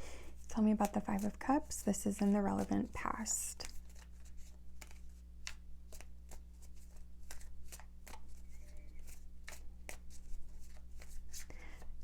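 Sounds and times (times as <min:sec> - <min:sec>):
cards being shuffled: 0:00.7 - 0:11.9.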